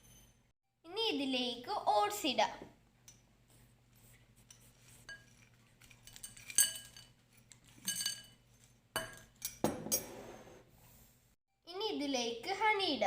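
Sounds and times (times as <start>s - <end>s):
spoon clinking against bowl: 7.8s - 8.4s.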